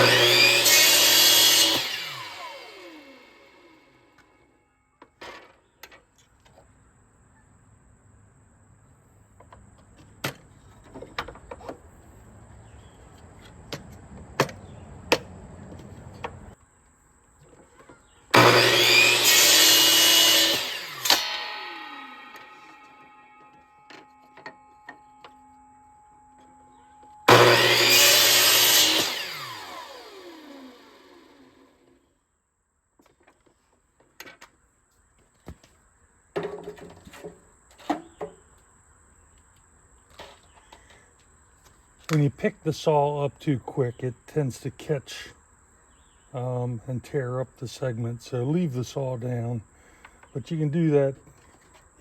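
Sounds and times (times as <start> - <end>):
miter saw cutting wood: 0.0 - 4.5, 18.3 - 32.0.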